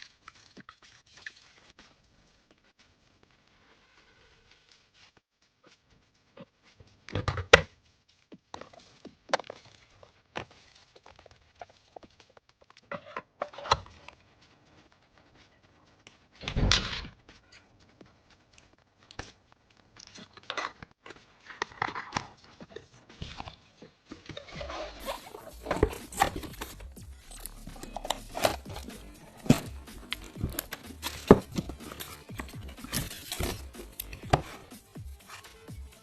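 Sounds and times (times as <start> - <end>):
plastic crinkling and tearing: 24.7 - 35.6.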